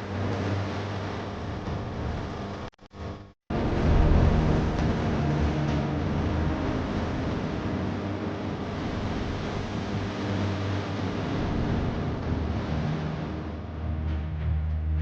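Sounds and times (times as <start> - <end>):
steady rushing noise: 0.0 - 14.6
low sustained tones: 3.5 - 15.0.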